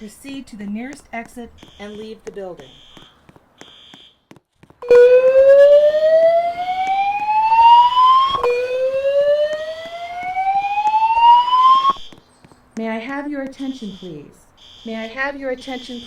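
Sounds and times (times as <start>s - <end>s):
fire alarm whoop tone: 4.8s - 12.1s.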